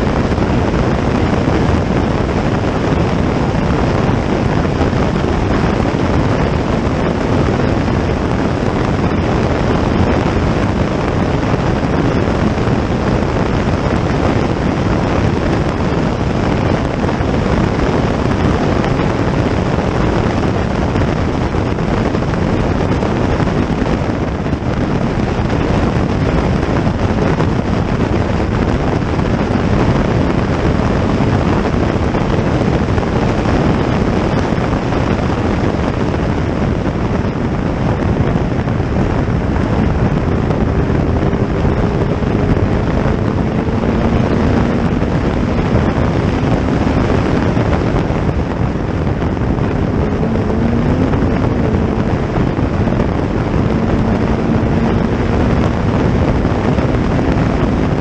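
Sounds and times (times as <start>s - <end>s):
wind rushing over microphone: 0.0s - 58.0s
racing engine: 41.0s - 58.0s.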